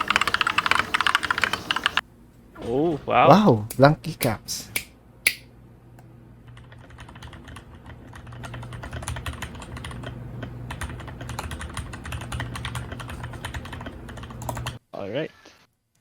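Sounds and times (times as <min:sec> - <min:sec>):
mechanical keyboard typing: 0:00.0 - 0:02.0, 0:06.5 - 0:14.8
steady low hum: 0:00.0 - 0:14.8.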